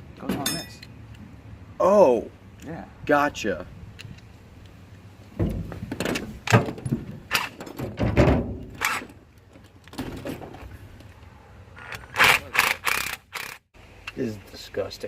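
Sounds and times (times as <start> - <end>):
heavy metal clunks: 5.4 - 8.8.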